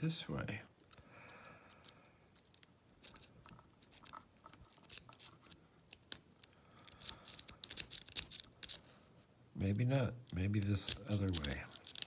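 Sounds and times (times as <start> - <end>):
lock pick scraping in padlock: 1.6 - 6.2, 6.8 - 8.9, 10.6 - 12.0.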